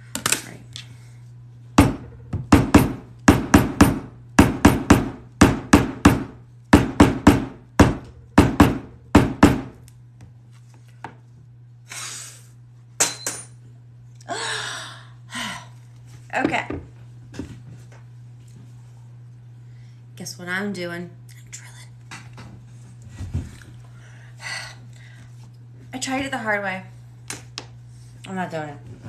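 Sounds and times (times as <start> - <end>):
mallet striking leather punch: 1.8 - 9.8.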